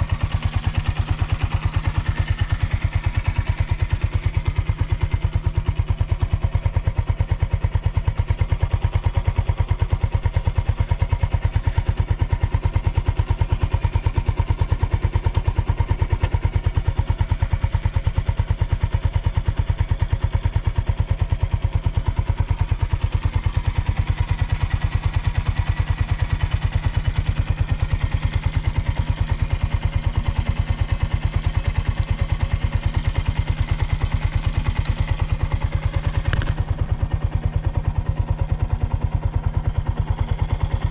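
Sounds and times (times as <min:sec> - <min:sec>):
motorcycle engine idling: 0:00.0 - 0:40.9.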